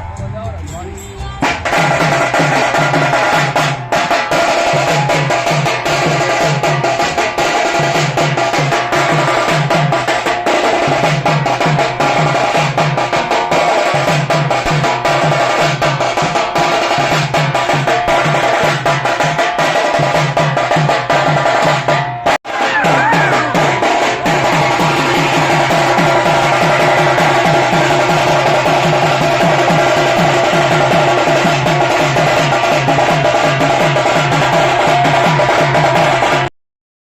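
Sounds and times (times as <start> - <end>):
drum-heavy dance music: 0.0 - 36.5.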